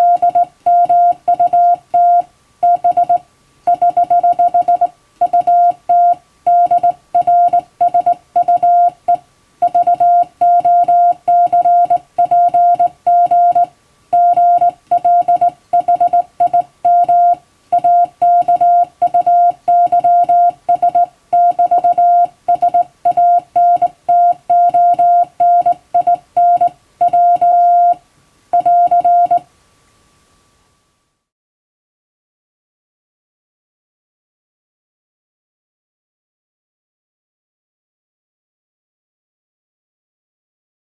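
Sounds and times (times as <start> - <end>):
morse code tone: 0.0 - 28.0, 28.6 - 29.4.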